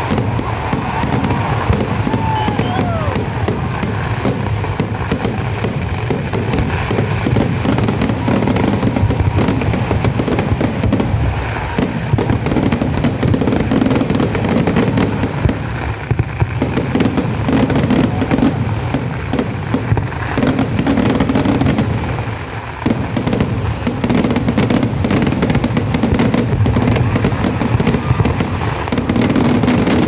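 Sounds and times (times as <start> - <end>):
firecracker explosions barrage: 0.0 - 30.0.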